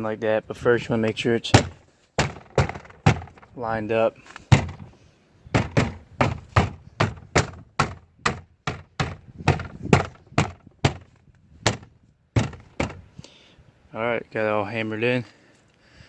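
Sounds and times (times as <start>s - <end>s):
palm thunks on door panel: 1.6s - 3.5s, 4.5s - 13.1s.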